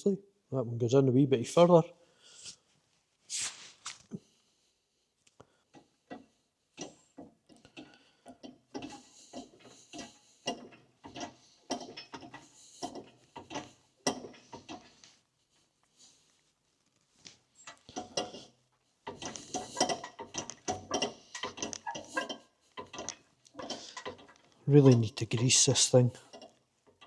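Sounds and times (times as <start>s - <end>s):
small metallic clicks and scrapes: 5.7s - 15.2s, 17.2s - 27.0s.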